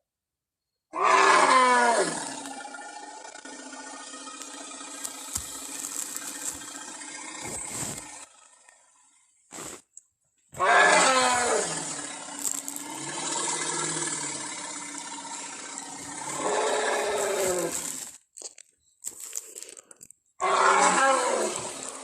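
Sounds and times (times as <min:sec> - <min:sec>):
elephant roaring: 0:00.9 - 0:08.3, 0:10.6 - 0:18.2, 0:20.4 - 0:22.0.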